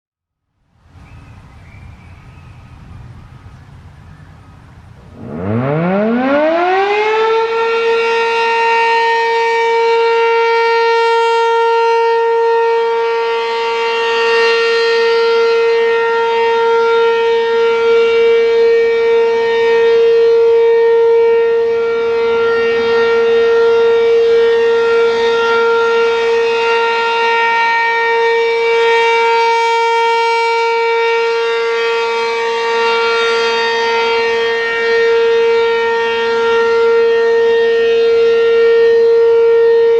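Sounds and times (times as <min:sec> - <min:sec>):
warning siren steady tone: 0:00.8 - 0:39.9.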